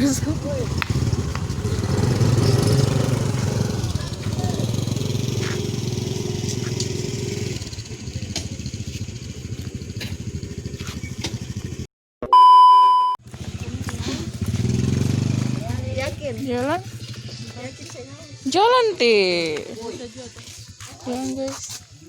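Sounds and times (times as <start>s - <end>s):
motorcycle engine running: 0.0s - 11.9s, 13.2s - 22.0s
loud steady beep: 12.3s - 13.2s.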